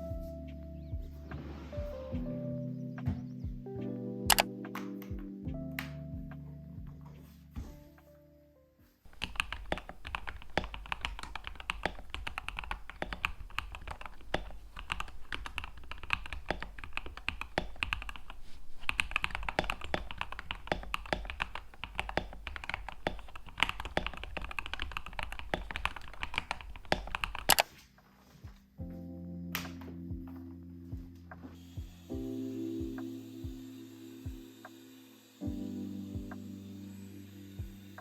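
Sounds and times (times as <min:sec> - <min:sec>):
mechanical keyboard typing: 0:04.3 - 0:06.0, 0:09.1 - 0:27.7.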